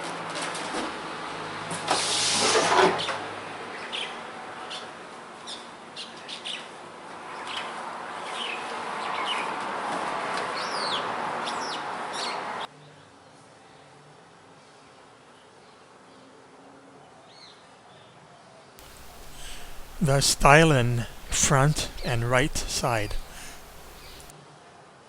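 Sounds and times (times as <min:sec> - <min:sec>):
steady hiss: 0:18.8 - 0:24.3
small birds chirping: 0:21.9 - 0:24.3.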